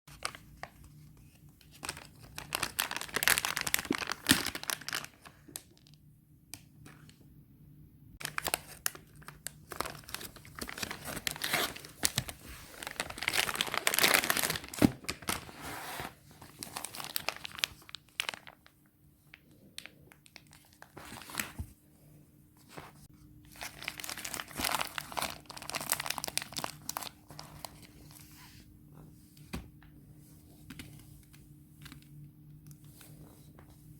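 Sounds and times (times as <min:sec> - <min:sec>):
packaging crinkling and tearing: 0:00.1 - 0:06.6, 0:08.2 - 0:18.7, 0:19.4 - 0:21.6, 0:23.5 - 0:28.2.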